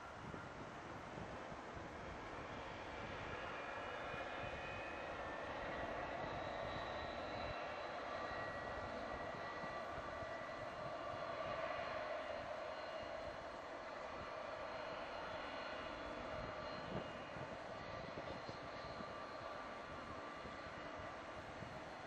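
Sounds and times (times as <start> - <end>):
jet engines rumbling and whining: 0.0 - 22.0.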